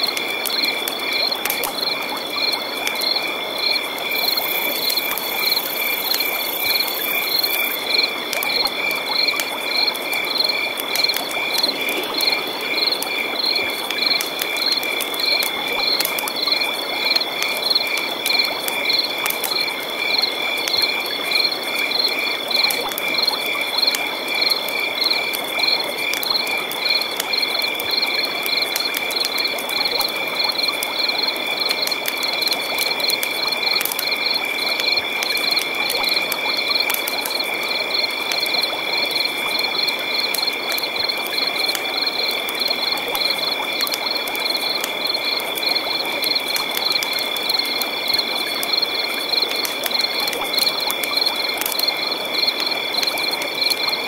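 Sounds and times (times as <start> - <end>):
frogs calling: 0.0 - 54.0
high insect trill: 2.4 - 8.1.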